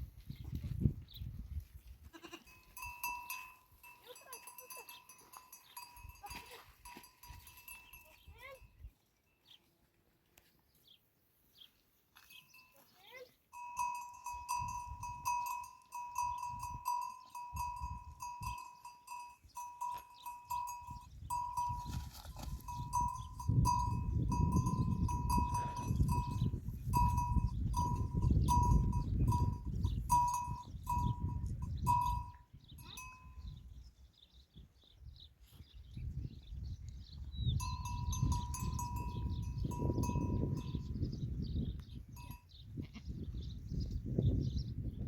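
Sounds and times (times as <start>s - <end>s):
animal bells clanking: 2.2s - 8.8s, 12.2s - 33.7s, 37.4s - 41.3s, 42.0s - 43.0s.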